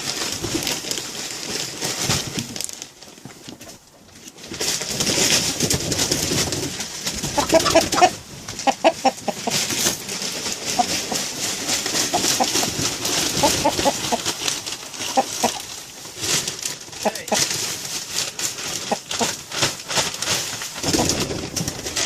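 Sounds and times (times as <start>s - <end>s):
chickens clucking: 7.2s - 9.8s, 10.6s - 11.3s, 11.9s - 15.8s, 17.0s - 17.6s, 18.8s - 19.3s.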